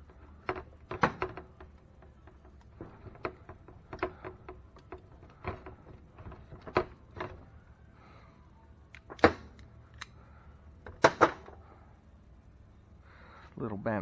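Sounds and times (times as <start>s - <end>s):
hand tools clicking and knocking: 0.0s - 7.5s.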